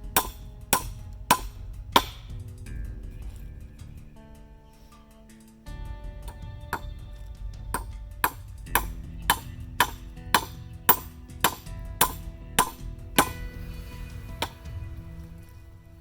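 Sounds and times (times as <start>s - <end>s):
hammer driving nails into wood: 0.0s - 2.4s, 7.7s - 13.6s
acoustic background music: 0.0s - 16.0s.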